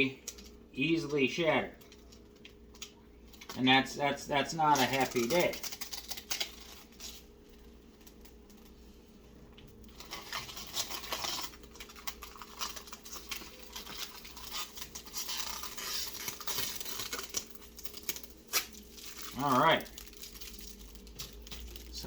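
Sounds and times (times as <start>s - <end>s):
plastic crinkling: 4.5s - 9.0s, 9.6s - 22.0s.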